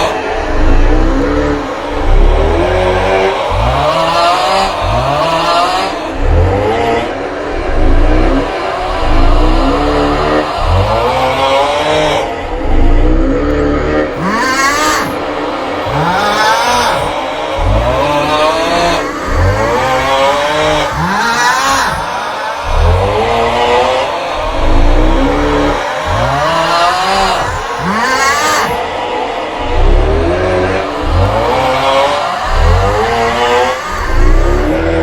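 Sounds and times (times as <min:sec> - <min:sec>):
loud snore with wavering cry: 0:00.0 - 0:35.0
low rumble: 0:00.2 - 0:03.9, 0:06.0 - 0:14.4, 0:22.6 - 0:28.0, 0:28.6 - 0:35.0.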